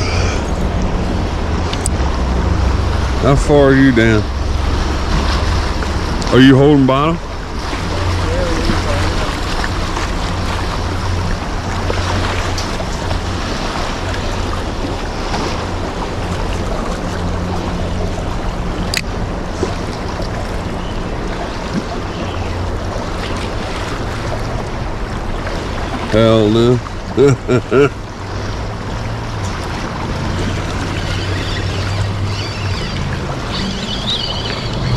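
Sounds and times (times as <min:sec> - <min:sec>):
low rumble: 0:00.0 - 0:06.3.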